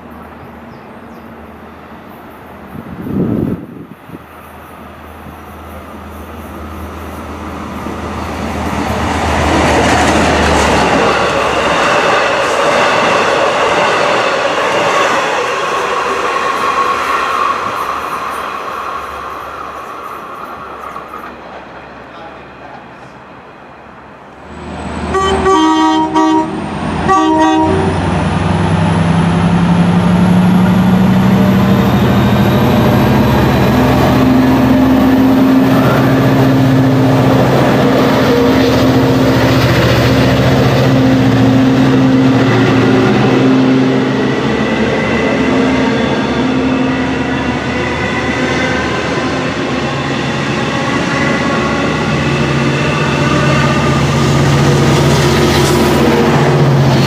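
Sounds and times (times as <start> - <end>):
high whine of passing train: 0.0 - 57.0
train motors droning: 24.5 - 57.0
train horn blasts: 25.1 - 28.1, 53.0 - 54.3.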